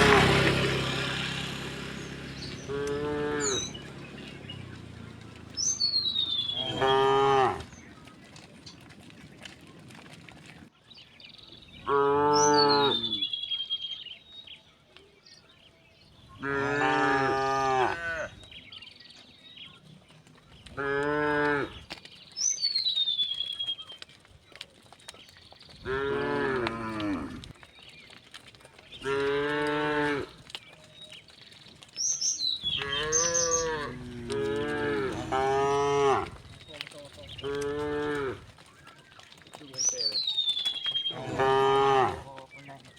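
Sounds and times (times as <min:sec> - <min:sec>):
cows mooing: 0:00.0 - 0:07.9, 0:11.8 - 0:13.3, 0:16.4 - 0:18.4, 0:20.7 - 0:21.9, 0:25.8 - 0:27.7, 0:29.0 - 0:30.6, 0:32.5 - 0:39.8, 0:40.9 - 0:42.7.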